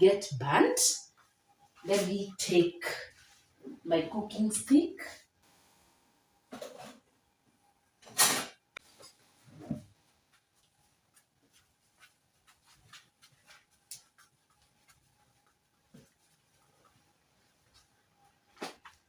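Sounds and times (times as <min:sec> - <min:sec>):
light clicks and taps: 0:12.9 - 0:16.1.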